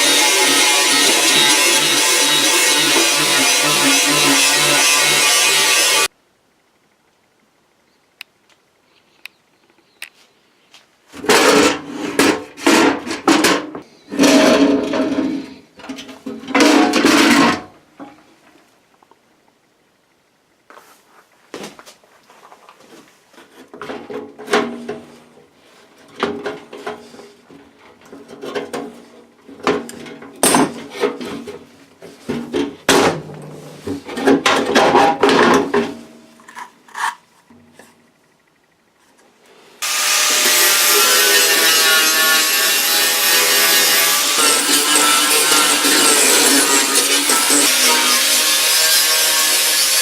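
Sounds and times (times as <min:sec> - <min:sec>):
hand tool scraping and rubbing: 0:00.0 - 0:06.1, 0:13.8 - 0:15.7, 0:35.6 - 0:38.0, 0:39.6 - 0:50.0.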